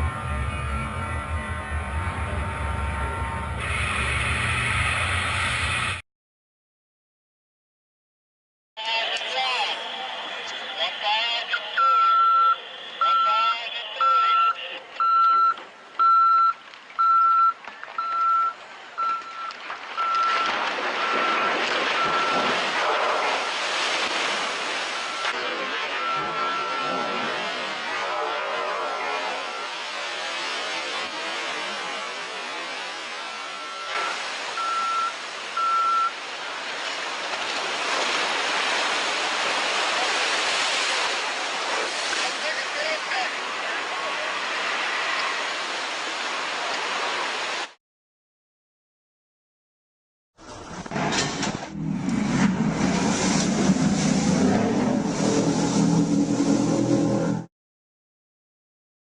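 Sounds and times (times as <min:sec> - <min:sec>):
rushing noise: 0:00.0 - 0:06.0, 0:20.0 - 0:47.8, 0:50.4 - 0:57.5
electronic warning beeps: 0:11.8 - 0:22.5, 0:25.0 - 0:25.4, 0:26.0 - 0:27.1, 0:33.3 - 0:36.1.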